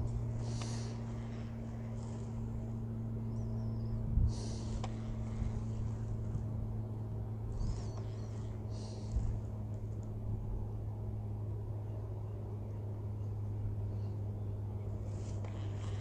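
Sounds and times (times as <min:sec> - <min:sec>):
low motor hum: 0:00.0 - 0:16.0
bird chirps: 0:03.2 - 0:04.7, 0:07.6 - 0:09.1.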